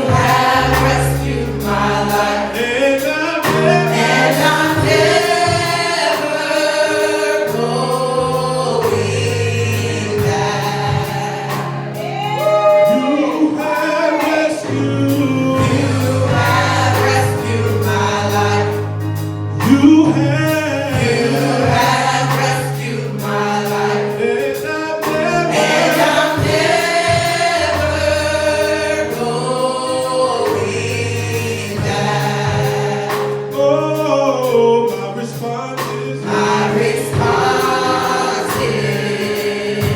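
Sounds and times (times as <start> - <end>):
held bass notes: 0.0 - 13.8, 14.4 - 39.9
gospel choir singing: 0.0 - 39.9
instrumental backing: 0.0 - 39.9.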